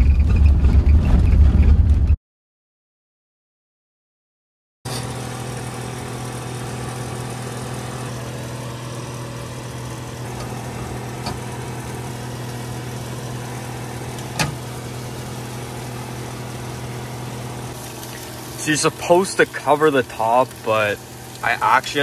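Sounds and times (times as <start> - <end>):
engine hum: 4.9 - 22.0.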